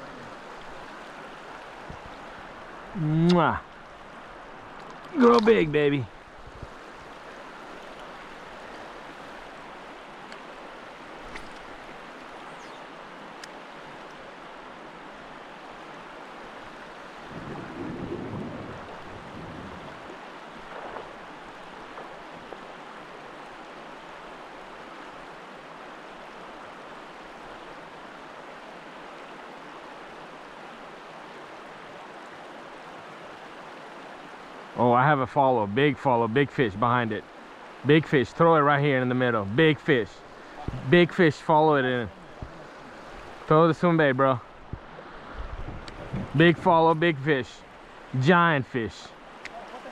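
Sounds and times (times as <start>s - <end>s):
river water rushing over shoals: 0.0s - 49.9s.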